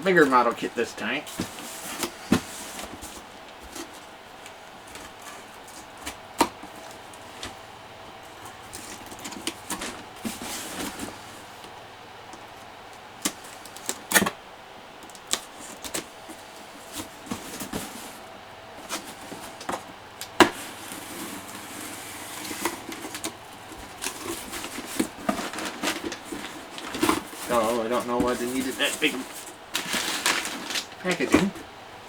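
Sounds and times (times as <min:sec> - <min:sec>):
cardboard box handled and opened: 0:01.2 - 0:07.6, 0:08.3 - 0:11.7, 0:15.3 - 0:31.7.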